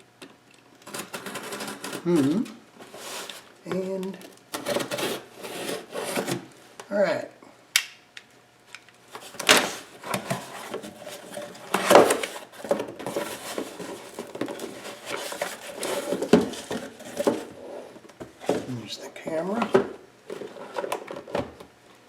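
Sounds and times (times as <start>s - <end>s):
packaging being handled and rustled: 0.8s - 6.5s, 9.1s - 18.8s
box scraping and knocking: 4.6s - 6.5s, 9.8s - 18.8s.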